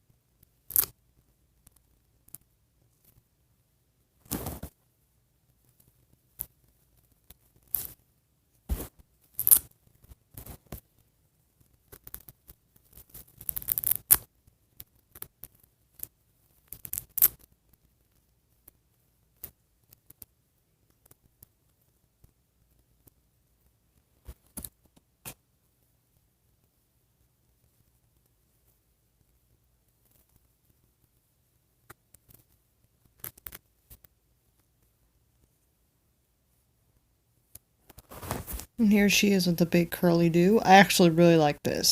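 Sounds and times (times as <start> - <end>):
plastic doll clicks and scrapes: 11.9 - 17.5, 33.1 - 34.1.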